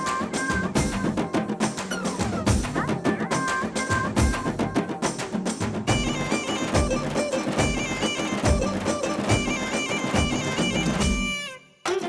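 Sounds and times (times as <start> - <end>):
steady drum beat: 0.0 - 11.4
wind instrument melody: 5.9 - 12.0.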